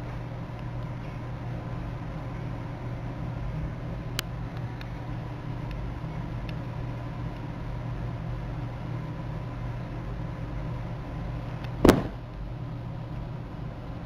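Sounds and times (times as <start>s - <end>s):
sharp knock: 11.9s - 12.2s.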